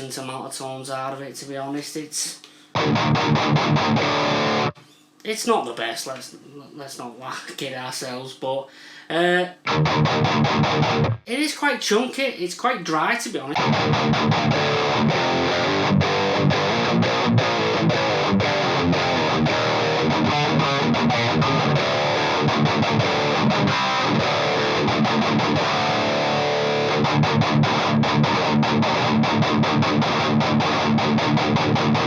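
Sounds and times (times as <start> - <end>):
distorted electric guitar riff: 2.7 - 4.8, 9.6 - 11.3, 13.5 - 32.0.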